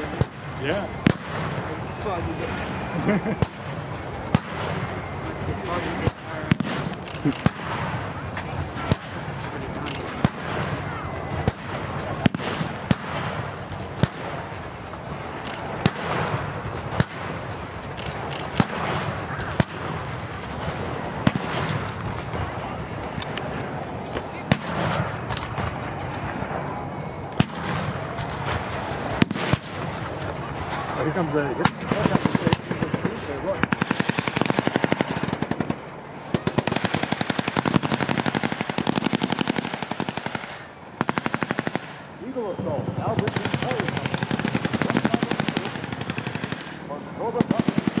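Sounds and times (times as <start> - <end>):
steady background rush: 0.0 - 48.0
artillery and blank fire bangs: 6.0 - 22.6, 27.4 - 31.0, 31.6 - 42.1, 43.1 - 48.0.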